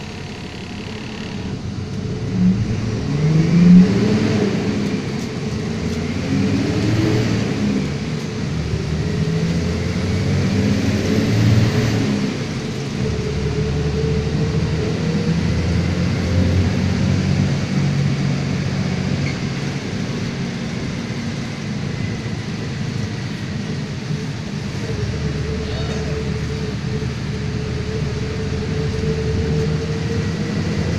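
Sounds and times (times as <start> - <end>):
bus diesel engine running: 0.0 - 30.9.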